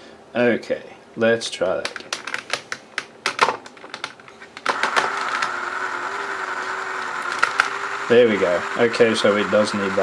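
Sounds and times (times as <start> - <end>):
plastic parts clicking: 1.6 - 8.1
small electric motor whirring: 4.7 - 10.0.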